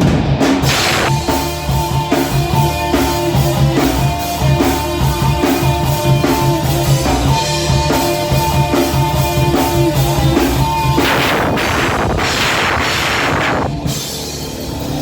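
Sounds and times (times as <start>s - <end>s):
electric guitar riff: 0.0s - 3.7s, 10.9s - 14.7s
drum kit beat: 0.0s - 14.5s
cymbal crash: 0.6s - 1.5s, 11.0s - 14.2s.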